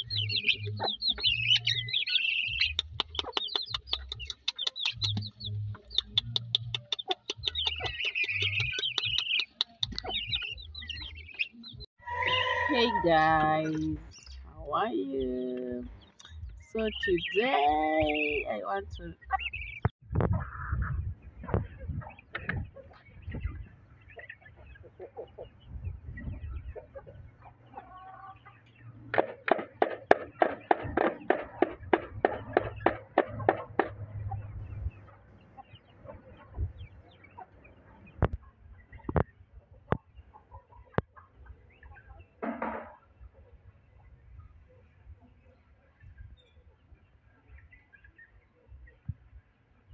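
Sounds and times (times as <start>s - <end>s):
rapid sharp poultry calls: 0.0s - 13.1s, 21.5s - 38.3s
hen clucking: 0.0s - 43.2s
chicks peeping: 0.0s - 49.9s
rapid sharp clicks: 2.6s - 10.1s.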